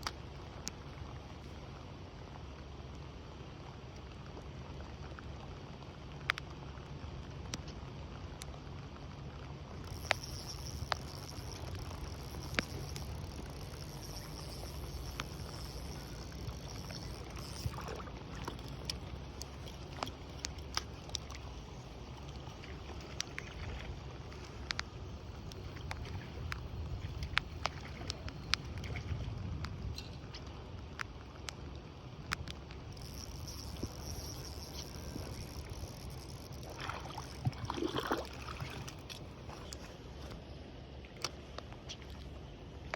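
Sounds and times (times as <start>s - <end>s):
light clicks: 9.8s - 31.6s, 32.2s - 37.5s.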